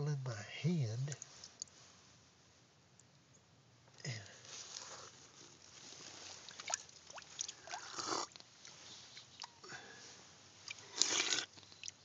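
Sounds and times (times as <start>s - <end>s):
faint water trickle: 1.0s - 1.9s, 4.0s - 12.0s
man slurping water: 7.4s - 8.4s, 10.7s - 12.0s
wet mouth clicks: 10.7s - 12.0s.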